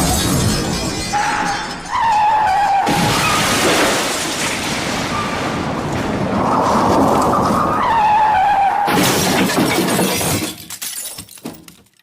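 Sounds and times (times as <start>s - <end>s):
breaking glass and debris: 0.0s - 6.2s, 8.9s - 12.0s
car crash: 0.0s - 11.3s.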